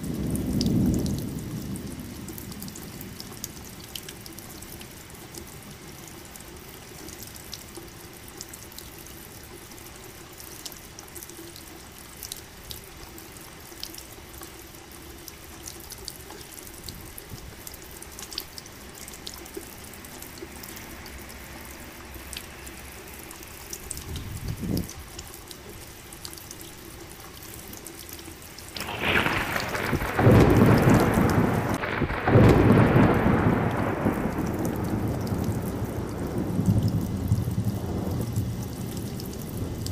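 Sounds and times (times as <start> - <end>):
steady rain falling: 0.0 - 39.9
close drips: 0.4 - 39.9
thunder roll: 28.8 - 39.8.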